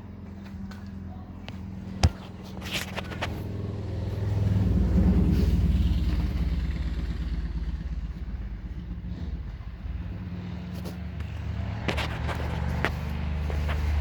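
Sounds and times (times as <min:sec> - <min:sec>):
vehicle engine running: 0:00.0 - 0:14.0.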